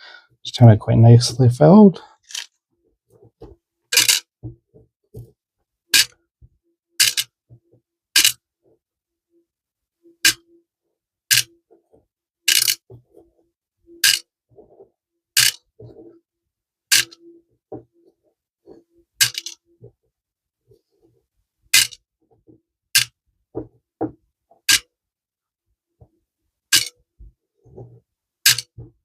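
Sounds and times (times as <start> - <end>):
faint handling sounds: 1.1 - 5.8, 10.8 - 15.0, 15.6 - 16.2, 17.0 - 21.4, 27.2 - 29.0.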